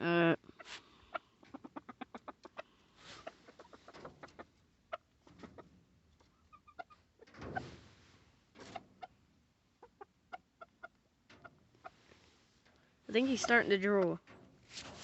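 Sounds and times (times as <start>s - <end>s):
chickens clucking: 0.5s - 7.7s, 8.6s - 12.1s, 13.2s - 14.1s.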